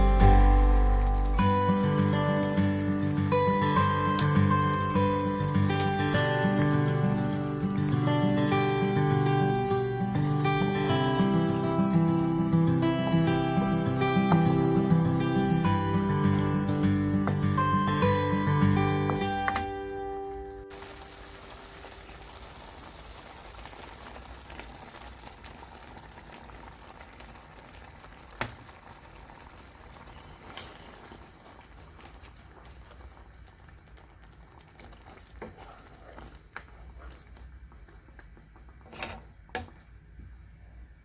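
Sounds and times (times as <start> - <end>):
meatballs sizzling in a pan: 20.7 - 34.3.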